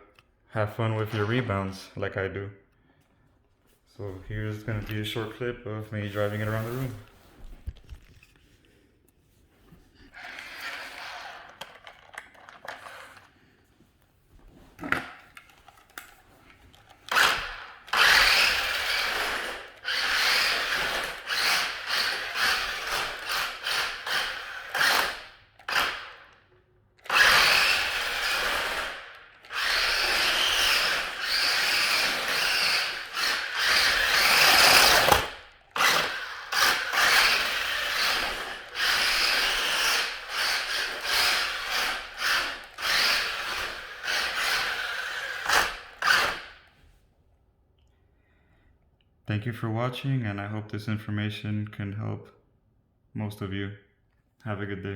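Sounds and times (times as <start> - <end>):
toy car motors whirring: 10.1 - 13.4, 15.4 - 46.7.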